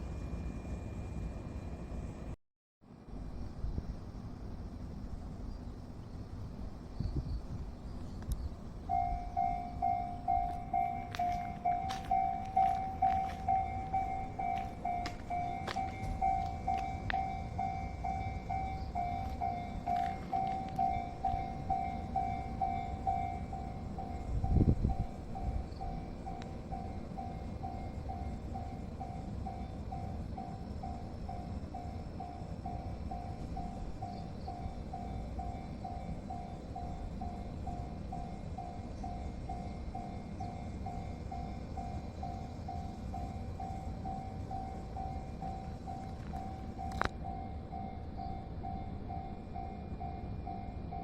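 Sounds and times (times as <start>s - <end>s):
low rumble of train: 0.0s - 51.0s
level crossing warning bell: 8.8s - 51.0s.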